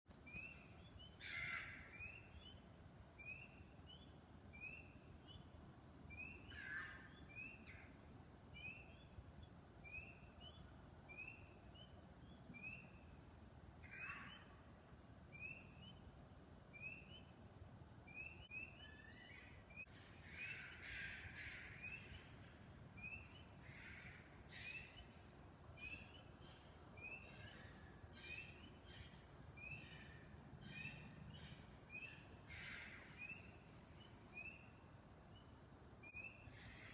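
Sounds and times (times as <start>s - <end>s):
wild canid calls: 1.1s - 2.3s, 6.2s - 8.0s, 18.8s - 22.4s, 23.1s - 25.2s, 25.9s - 33.6s.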